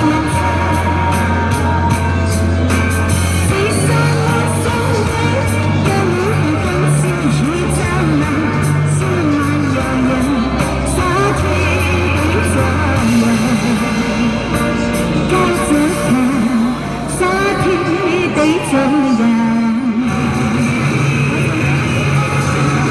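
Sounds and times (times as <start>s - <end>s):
person singing with vibrato: 0.0s - 22.9s.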